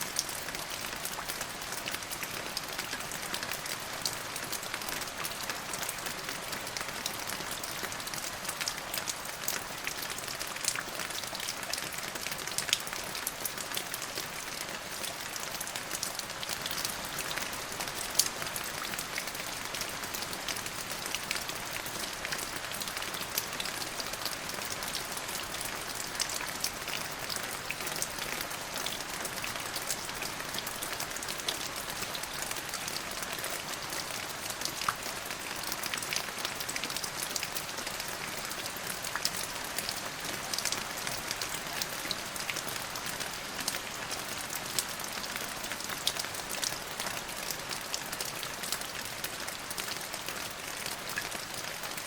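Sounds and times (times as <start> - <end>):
raindrops pattering on a surface: 0.0 - 52.0
steady rain: 0.0 - 52.0.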